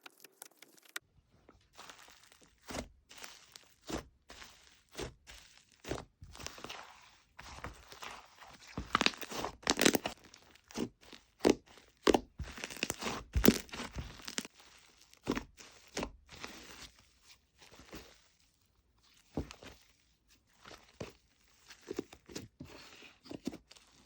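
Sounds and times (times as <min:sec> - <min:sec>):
slime squished by hand: 0:01.7 - 0:17.0.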